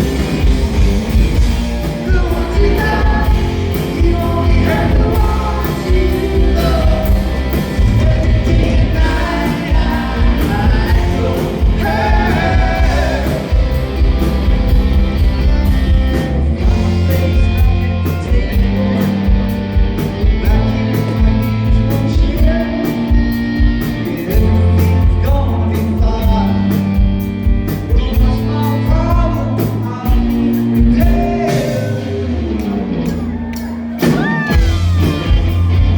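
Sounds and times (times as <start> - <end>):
steady drum beat: 0.0 - 32.3, 33.0 - 35.9
live rock band playing: 0.0 - 35.9
person singing: 2.0 - 13.6.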